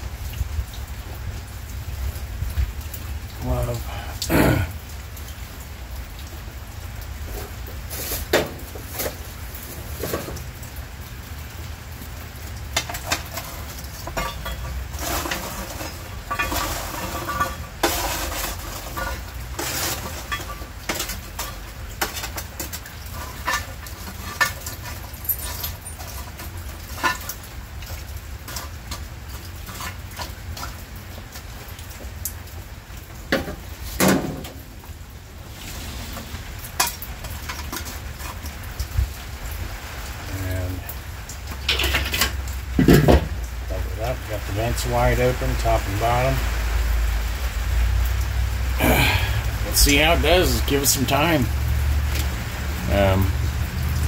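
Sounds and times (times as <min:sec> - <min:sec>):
rain pattering: 0:00.0 - 0:54.0
coals clinking on metal: 0:07.2 - 0:10.7, 0:12.5 - 0:34.8, 0:35.6 - 0:38.9, 0:40.2 - 0:46.4, 0:48.7 - 0:53.3.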